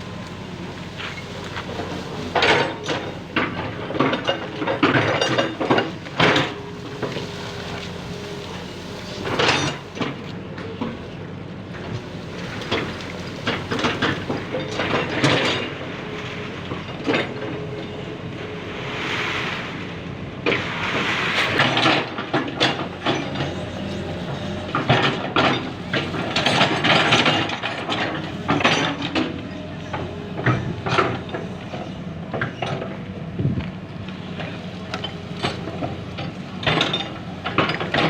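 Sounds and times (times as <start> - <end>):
metal clanks and knocks: 0.0 - 15.9, 16.6 - 18.0, 21.5 - 38.0
excavator engine running: 0.0 - 38.0
bucket scraping debris: 5.0 - 10.2.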